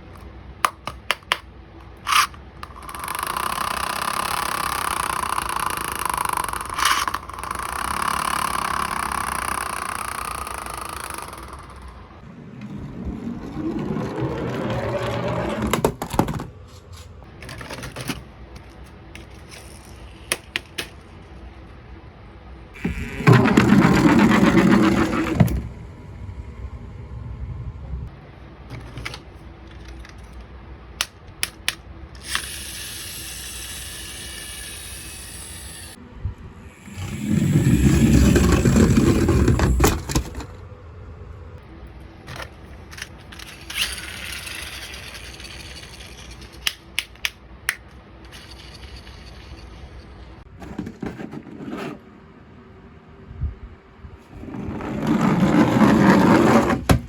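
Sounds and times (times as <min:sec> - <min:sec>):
toys clicking and knocking: 0:00.2 - 0:12.0, 0:17.4 - 0:21.0, 0:22.8 - 0:25.6, 0:31.0 - 0:33.3, 0:42.3 - 0:49.9.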